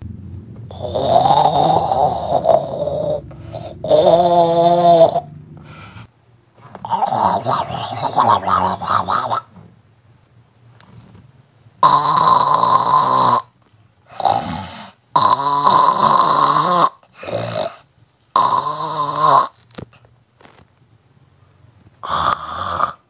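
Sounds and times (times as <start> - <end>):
person snoring loudly: 0.7 - 6.1, 6.8 - 9.5, 11.8 - 19.7, 22.0 - 23.0.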